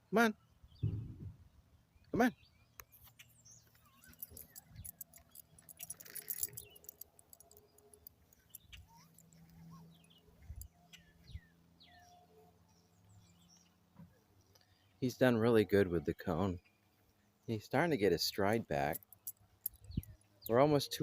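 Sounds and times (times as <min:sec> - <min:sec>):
faint birds chirping: 0:00.4 - 0:21.0.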